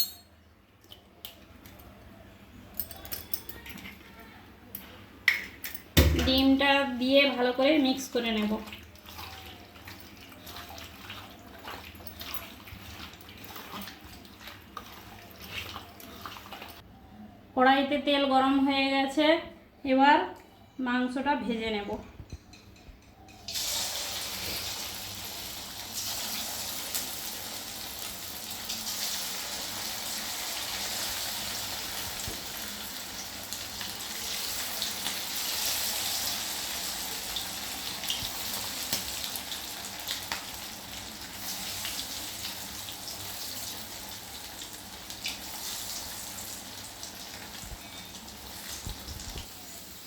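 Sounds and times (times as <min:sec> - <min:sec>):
chicken sizzling in hot oil: 0:23.5 - 0:50.0.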